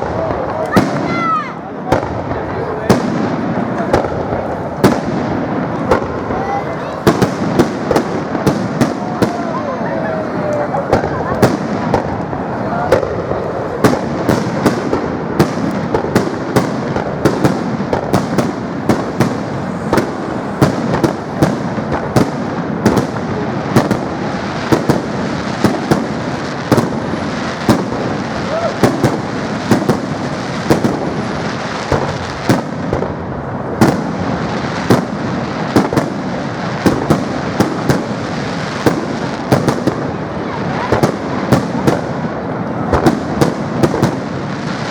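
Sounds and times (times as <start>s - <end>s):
steady wash of noise: 0.0s - 29.6s
fireworks bangs: 0.0s - 44.9s.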